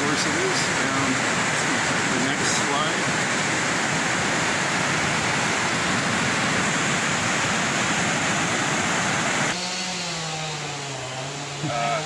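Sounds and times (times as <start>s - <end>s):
floodwater rushing: 0.0s - 9.6s.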